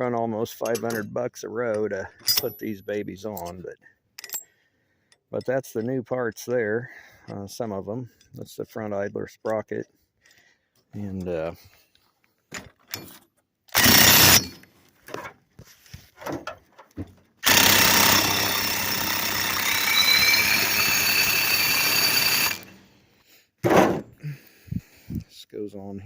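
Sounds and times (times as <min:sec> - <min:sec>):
power tool running with whine: 0:13.8 - 0:14.5, 0:17.4 - 0:22.8.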